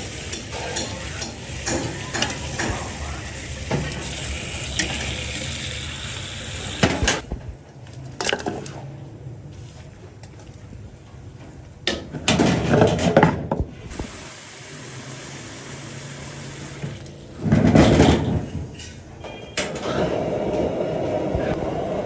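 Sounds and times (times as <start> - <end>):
water running and splashing: 0.0 - 7.2.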